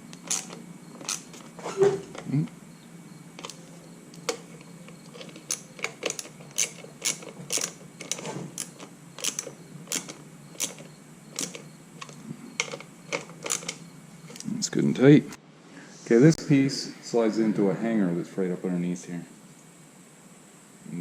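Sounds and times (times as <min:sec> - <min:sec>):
socket ratchet clicking: 0:00.1 - 0:01.5, 0:03.4 - 0:03.6, 0:04.2 - 0:14.4.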